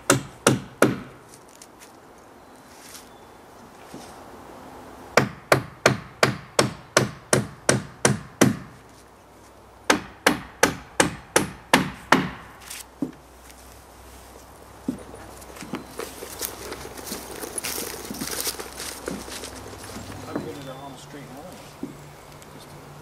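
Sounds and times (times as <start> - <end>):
hammer striking wood: 0.0 - 1.2, 5.2 - 8.8, 9.9 - 13.2.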